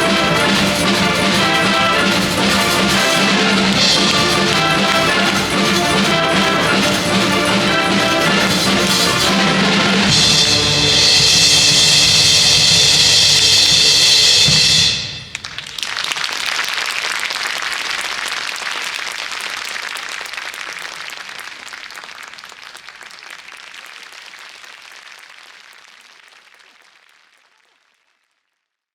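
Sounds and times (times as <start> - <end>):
audience applause: 0.0 - 11.1, 15.1 - 28.2
wind band with drum kit: 0.0 - 15.8.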